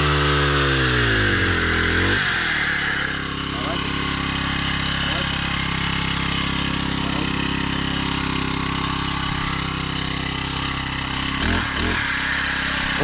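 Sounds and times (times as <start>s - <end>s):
machine engine running: 0.0s - 13.0s
steady high whine: 1.7s - 13.0s.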